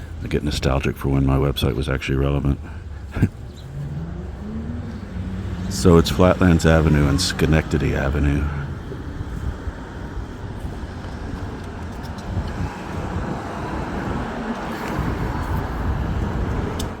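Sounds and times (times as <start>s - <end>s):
cars passing: 0.0s - 17.0s.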